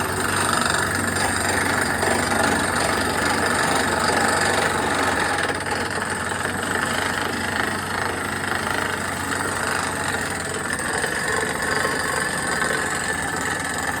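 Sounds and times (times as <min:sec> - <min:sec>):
drilling rig rattling: 0:00.0 - 0:14.0.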